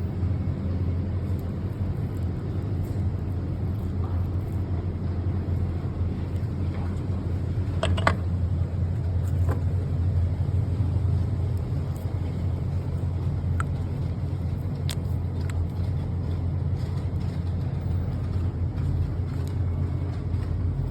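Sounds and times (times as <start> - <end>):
engine idling: 0.0 - 20.9
sharp engine clicks: 11.6 - 20.9.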